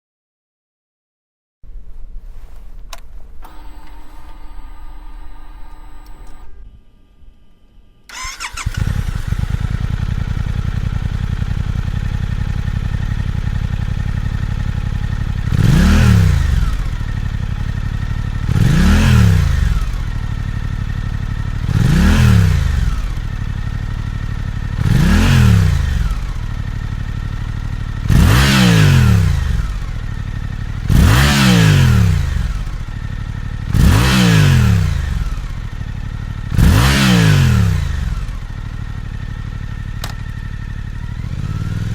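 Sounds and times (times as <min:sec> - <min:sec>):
motorcycle engine idling and revving: 0:08.1 - 0:41.9.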